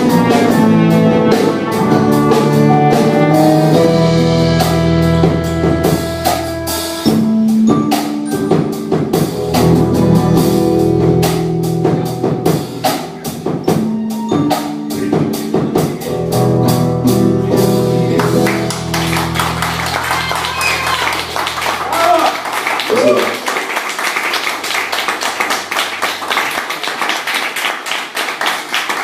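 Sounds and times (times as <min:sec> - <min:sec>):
held bass and chord notes: 0:00.0 - 0:23.2
drum kit beat: 0:00.0 - 0:27.0.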